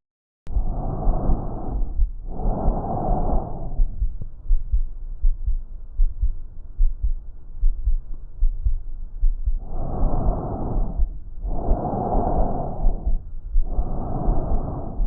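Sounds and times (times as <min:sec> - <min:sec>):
breath through stethoscope: 0:00.5 - 0:04.1, 0:09.5 - 0:15.0
heartbeat thumping: 0:00.5 - 0:15.0.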